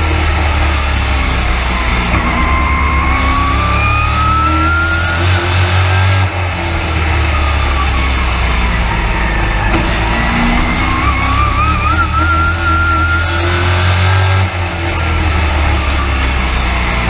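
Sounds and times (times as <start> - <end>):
truck engine running hard: 0.0 - 17.0
thin wavering whine: 0.3 - 13.5.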